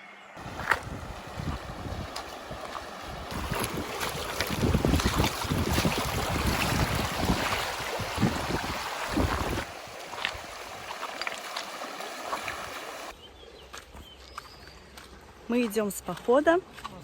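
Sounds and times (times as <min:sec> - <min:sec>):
wind buffeting microphone: 0:00.4 - 0:10.9
rushing river water: 0:00.4 - 0:13.2
water splashes: 0:00.4 - 0:13.2.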